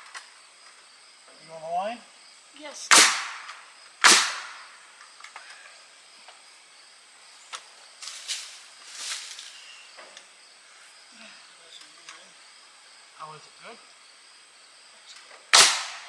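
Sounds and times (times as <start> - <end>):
nail gun firing: 2.9 - 4.7, 15.5 - 16.0.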